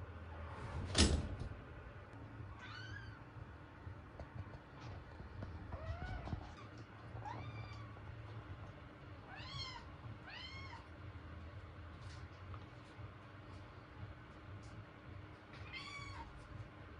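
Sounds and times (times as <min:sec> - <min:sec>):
kitten meowing: 0:02.5 - 0:03.2, 0:15.6 - 0:16.3.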